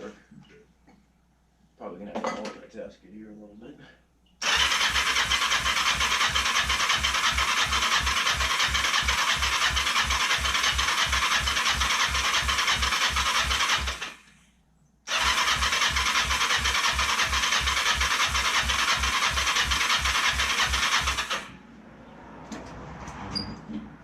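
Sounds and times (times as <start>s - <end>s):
starter cranking motorcycle engine: 4.4s - 14.4s, 15.1s - 21.6s.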